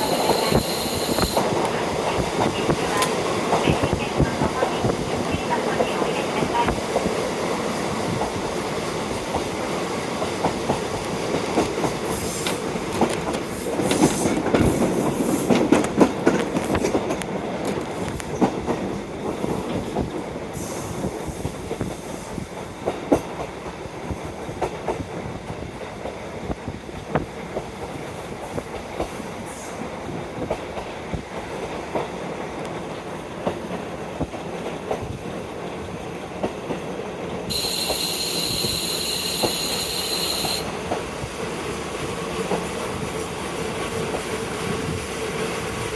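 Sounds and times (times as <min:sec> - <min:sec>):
high steady squeal: 0:00.0 - 0:01.5, 0:37.5 - 0:40.7
wind noise: 0:00.0 - 0:22.8, 0:40.6 - 0:45.9
train wheels clacking over rail joints: 0:09.2 - 0:20.3.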